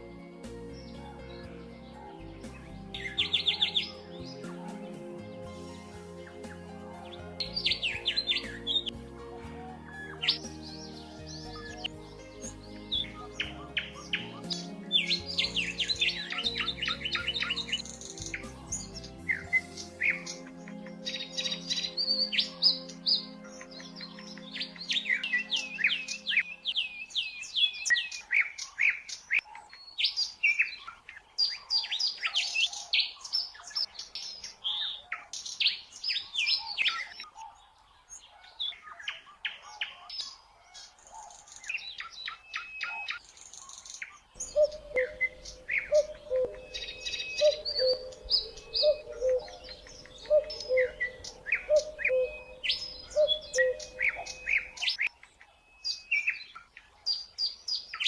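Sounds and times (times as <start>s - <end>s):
small birds chirping and trilling: 0.0s - 58.0s
lower two-note bird call: 44.4s - 54.9s.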